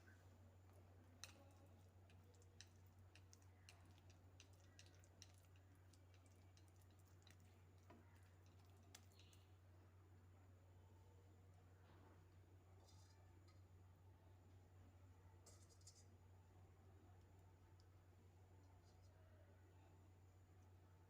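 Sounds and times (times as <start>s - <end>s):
low steady hum: 0.0s - 21.0s
faint clicks and taps: 0.7s - 9.5s.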